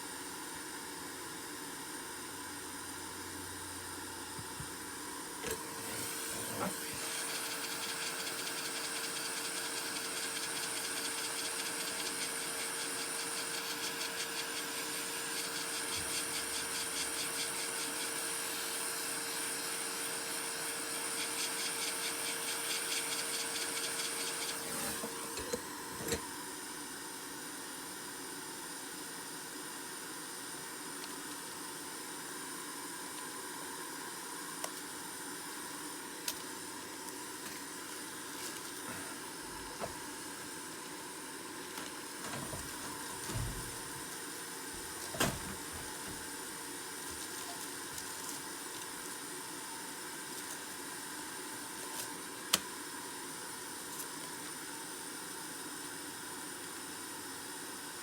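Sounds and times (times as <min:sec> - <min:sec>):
small electric motor humming: 0:05.4 - 0:26.2.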